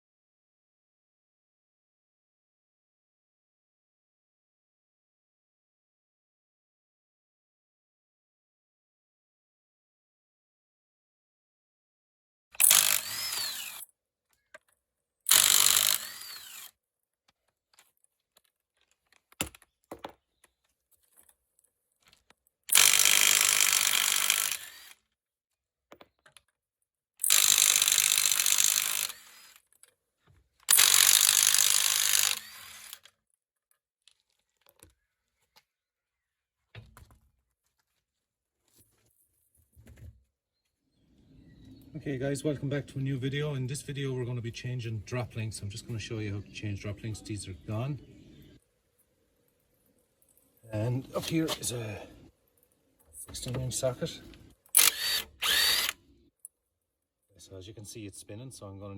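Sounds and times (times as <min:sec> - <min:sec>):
handheld power tool bursts: 0:12.6 - 0:13.9, 0:15.3 - 0:16.8, 0:22.7 - 0:25.1, 0:27.2 - 0:29.7, 0:30.7 - 0:33.2, 0:54.7 - 0:56.0.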